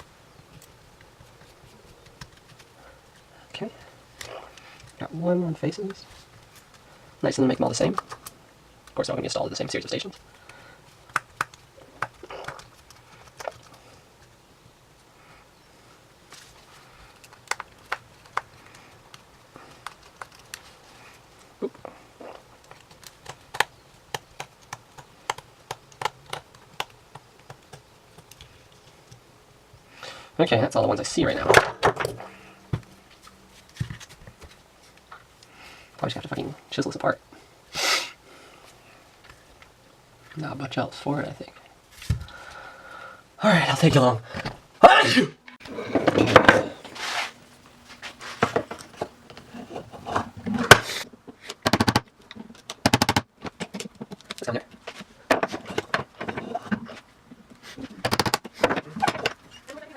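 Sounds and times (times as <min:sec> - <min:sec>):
sharp plastic crack: 0:10.0 - 0:13.8, 0:17.1 - 0:20.8, 0:22.6 - 0:28.5, 0:50.2 - 0:56.8, 0:58.0 - 0:59.4.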